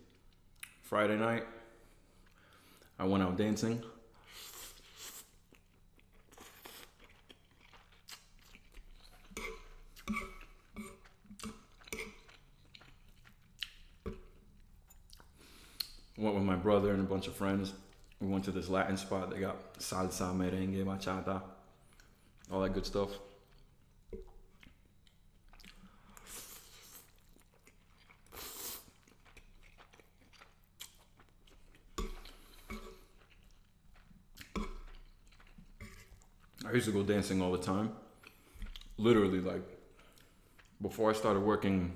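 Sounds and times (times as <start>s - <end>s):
close-up chewing: 4.5s - 16.1s, 23.2s - 36.7s
wet mouth noise: 9.1s - 12.4s, 34.4s - 36.2s
wet mouth smacks and clicks: 13.2s - 14.2s, 15.1s - 16.0s, 34.3s - 35.0s.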